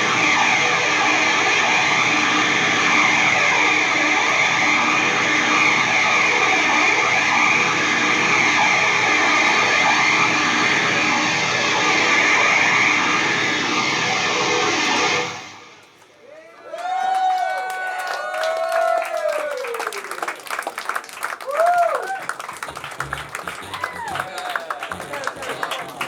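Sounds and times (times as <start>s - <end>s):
distorted electric guitars drone: 0.0s - 15.8s, 22.2s - 26.0s.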